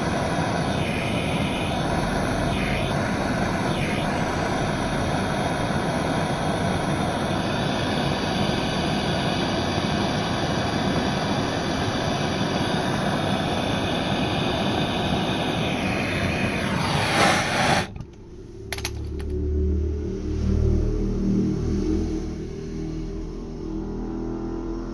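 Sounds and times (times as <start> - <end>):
gas torch flame burning: 0.0 - 19.4.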